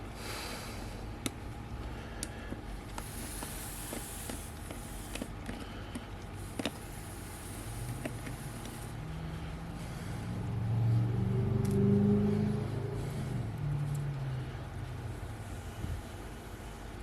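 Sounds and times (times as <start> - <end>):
vehicle engine passing by: 9.0 - 15.3.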